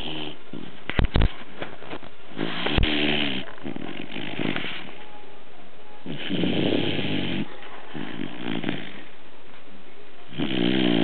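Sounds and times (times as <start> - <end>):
dog snoring: 0.0 - 0.8, 2.3 - 5.0, 6.0 - 9.1, 10.3 - 11.0.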